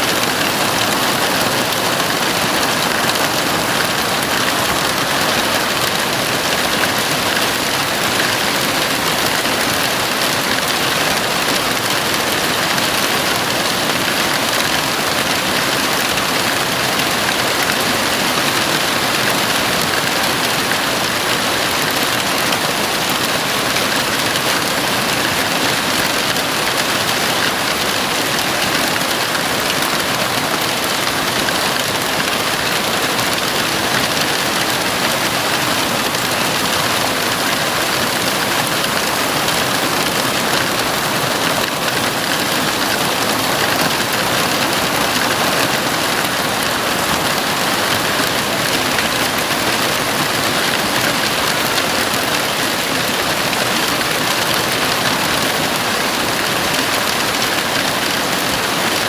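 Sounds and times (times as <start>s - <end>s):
heavy rain on a roof: 0.0s - 59.0s.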